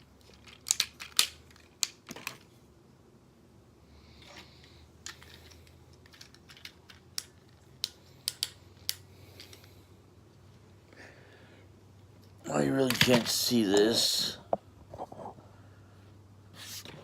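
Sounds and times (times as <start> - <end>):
plastic toy parts clicking: 0.2 - 2.5, 5.0 - 9.6.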